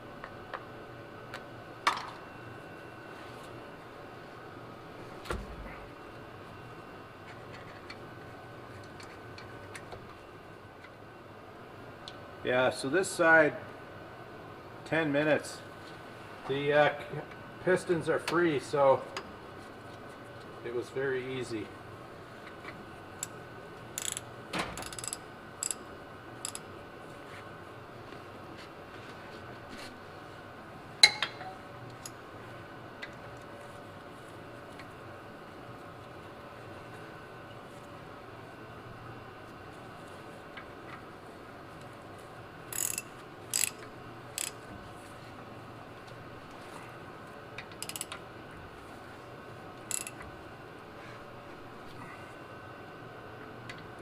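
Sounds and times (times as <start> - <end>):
faint steady hum: 0.0 - 54.0
ratchet clicking: 24.0 - 24.2, 24.8 - 25.8, 26.4 - 26.6, 42.7 - 44.6, 47.8 - 48.2, 49.9 - 50.2
sharp metal clicks: 24.0 - 24.2, 24.8 - 25.8, 26.4 - 26.6, 49.9 - 50.2.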